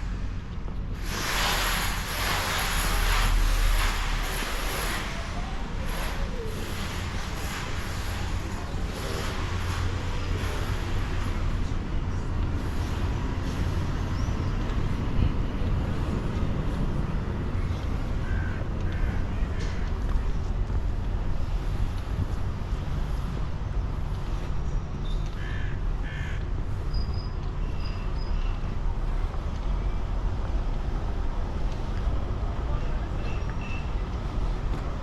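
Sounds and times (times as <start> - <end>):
steady low rumble: 0.0 - 33.3
crow cawing: 25.4 - 26.4.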